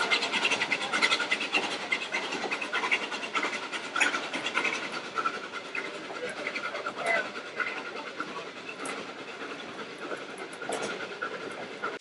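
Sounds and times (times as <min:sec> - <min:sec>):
steam locomotive exhaust chuffing: 0:00.0 - 0:12.0
train rumbling: 0:00.0 - 0:12.0.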